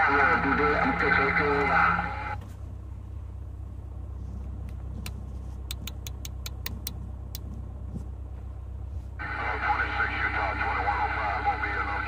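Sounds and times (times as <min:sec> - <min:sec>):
low steady hum: 0:00.0 - 0:12.0
sharp clicks: 0:04.7 - 0:07.6.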